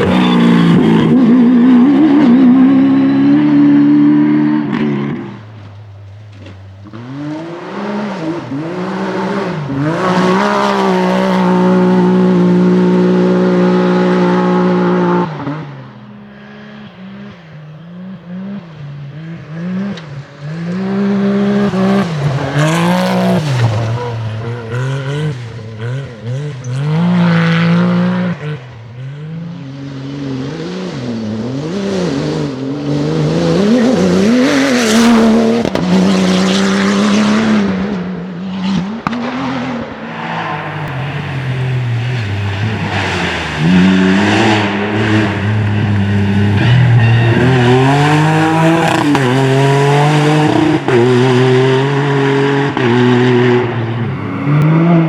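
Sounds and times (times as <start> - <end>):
tyre squeal: 0.0 - 2.5, 21.4 - 27.7, 39.2 - 50.0
car engine revving: 0.0 - 55.0.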